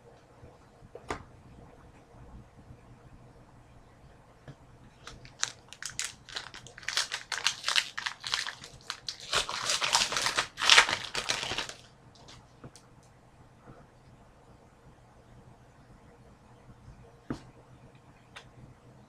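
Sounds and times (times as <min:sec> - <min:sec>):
wrapper crinkling and tearing: 0:05.0 - 0:11.9.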